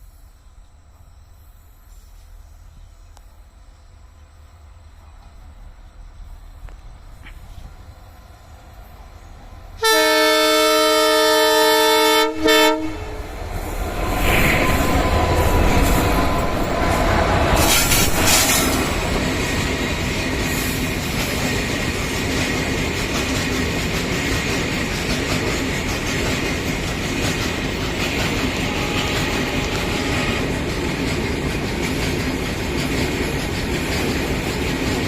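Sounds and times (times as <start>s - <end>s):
train wheels on rails: 0.0s - 35.0s
locomotive engines roaring: 6.7s - 35.0s
multi-tone train horn blast: 9.8s - 19.0s, 28.0s - 30.8s.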